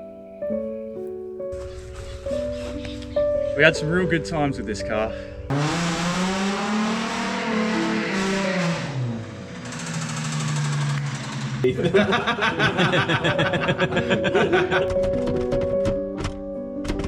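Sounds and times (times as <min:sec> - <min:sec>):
car engine revving hard: 0:01.6 - 0:03.3, 0:05.2 - 0:12.0.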